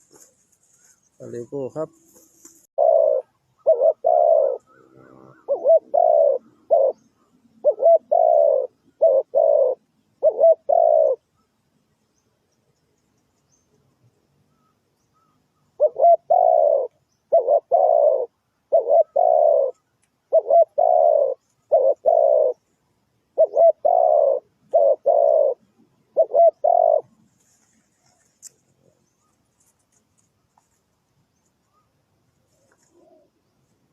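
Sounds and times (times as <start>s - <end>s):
dove cooing: 2.2s - 11.3s, 15.2s - 22.6s, 23.3s - 27.3s, 32.6s - 33.4s.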